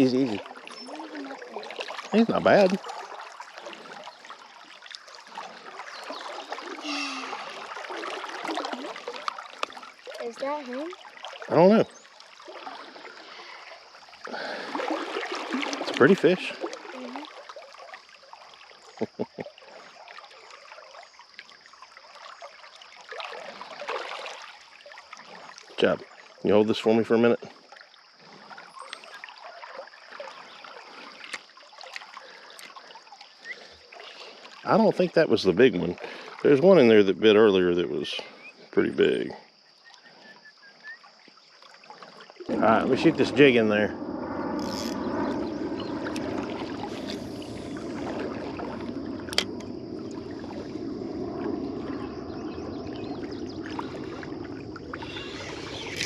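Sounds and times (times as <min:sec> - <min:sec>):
creek water trickling: 0:00.0 - 0:56.0
small water splashes: 0:00.0 - 0:56.0.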